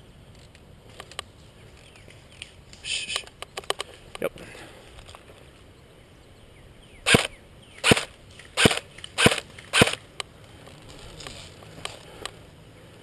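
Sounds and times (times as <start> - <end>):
airsoft gun shots: 7.1 - 10.0.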